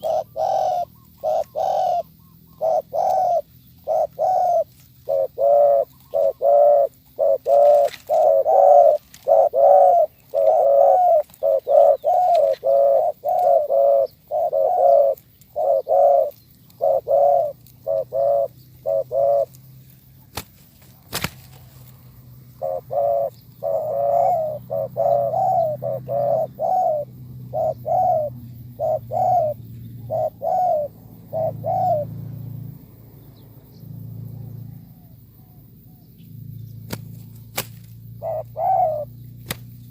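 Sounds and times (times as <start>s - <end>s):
doves cooing: 0.0s - 32.6s, 36.7s - 39.9s.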